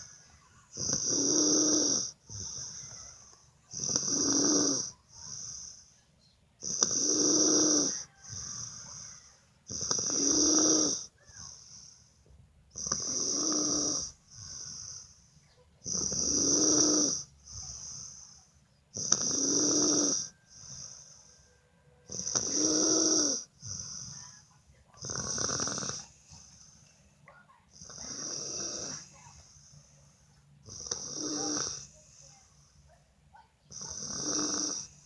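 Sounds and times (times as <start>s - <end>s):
person snoring loudly: 0.7s - 3.1s, 3.7s - 5.8s, 6.6s - 11.6s, 12.7s - 15.0s, 15.8s - 18.1s, 19.0s - 21.2s, 22.1s - 24.1s, 25.0s - 26.2s, 27.8s - 29.1s, 30.6s - 32.0s, 33.7s - 35.0s.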